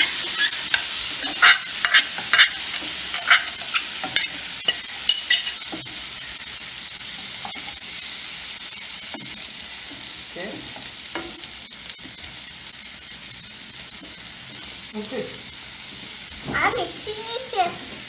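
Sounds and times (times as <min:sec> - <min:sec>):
spatula scraping a pan: 0:00.0 - 0:10.2
tomatoes sizzling in a pan: 0:00.0 - 0:18.0.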